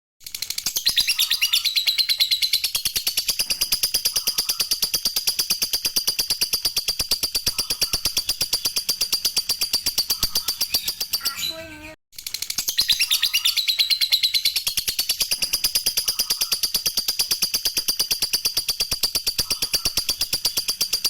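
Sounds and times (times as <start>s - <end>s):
lovebird rapid high chirps: 0.2s - 21.0s.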